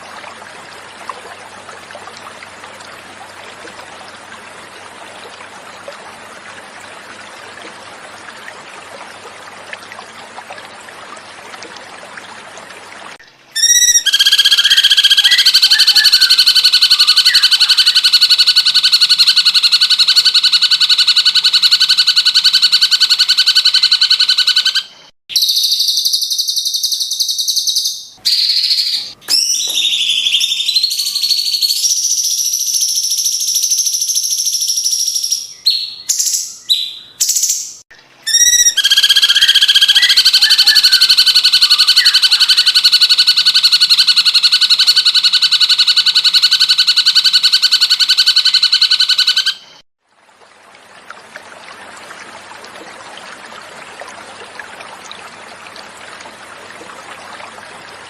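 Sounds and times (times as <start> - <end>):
rapidly pulsing bird trill: 13.6 - 49.8
sharp whistled bird phrases: 13.6 - 49.8.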